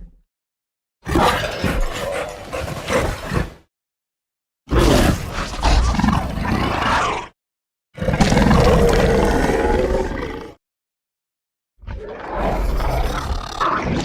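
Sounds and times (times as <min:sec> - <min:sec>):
dinosaur creature roars: 0:04.7 - 0:07.4, 0:08.0 - 0:10.6, 0:11.8 - 0:14.0.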